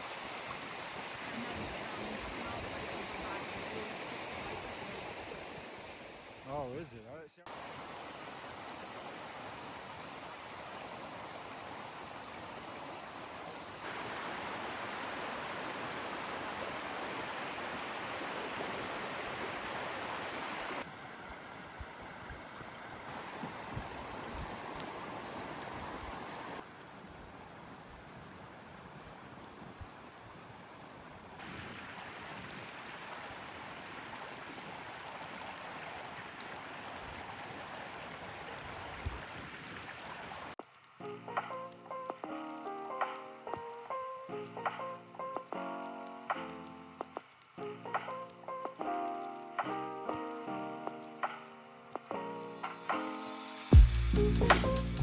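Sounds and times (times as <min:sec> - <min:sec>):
flowing water rushing: 0:00.0 - 0:53.8.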